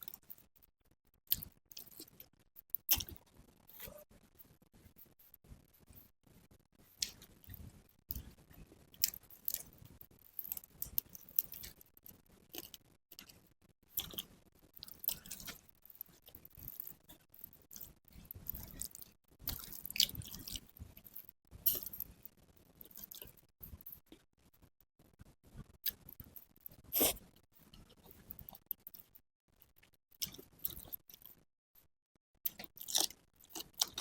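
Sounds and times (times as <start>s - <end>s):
person chewing food: 1.3s - 4.0s, 6.8s - 24.2s, 25.6s - 29.0s, 29.6s - 31.4s, 32.4s - 34.0s.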